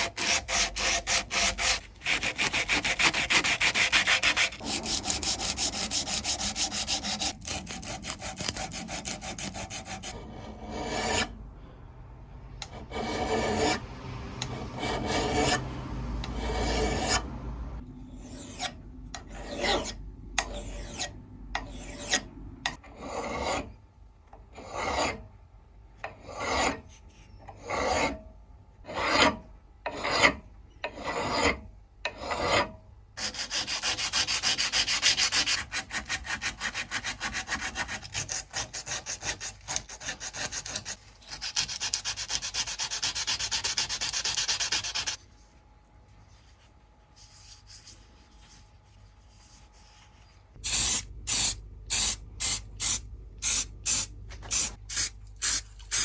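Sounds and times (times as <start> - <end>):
filing strokes on metal: 0.0 - 11.4, 12.6 - 13.8, 14.4 - 17.3, 18.2 - 22.3, 22.9 - 23.8, 24.5 - 25.2, 26.0 - 28.2, 28.8 - 45.5.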